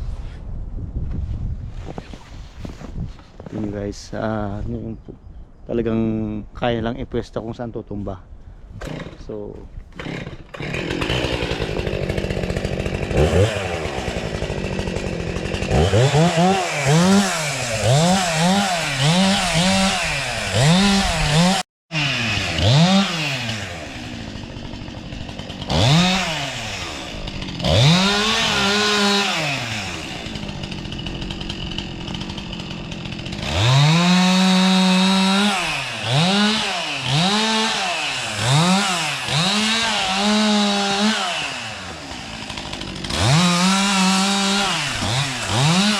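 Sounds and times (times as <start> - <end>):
chainsaw revving: 8.8 - 45.9.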